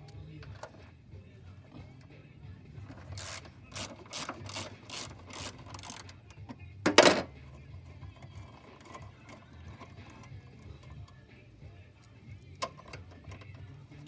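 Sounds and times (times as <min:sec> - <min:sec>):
ratchet wrench rasping: 0:02.8 - 0:06.5, 0:07.4 - 0:14.0.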